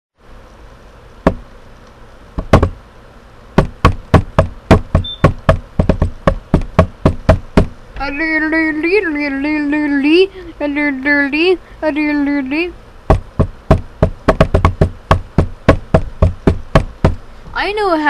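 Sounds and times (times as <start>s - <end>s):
sharp knocks: 1.2s - 1.4s, 2.4s - 2.8s, 3.6s - 7.8s, 13.1s - 17.2s
buzzy wavering pitched sound: 8.0s - 12.8s.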